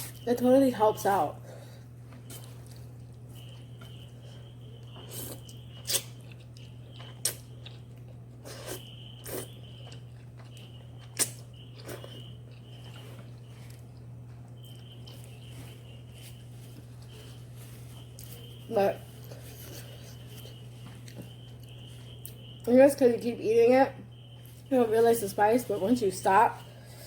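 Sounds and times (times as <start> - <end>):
steady low hum: 0.0 - 27.0
person chewing noodles: 1.6 - 22.6.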